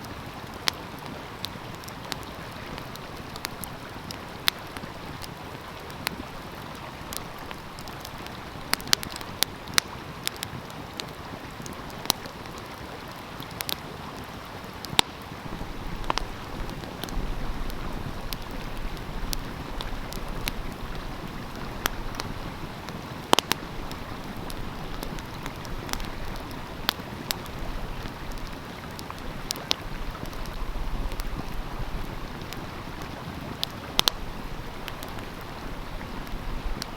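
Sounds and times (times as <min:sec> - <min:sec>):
stream rushing: 0:00.0 - 0:36.9
wood fire crackling and popping: 0:00.0 - 0:36.9
wind rumble on microphone: 0:15.3 - 0:23.1, 0:29.2 - 0:36.9.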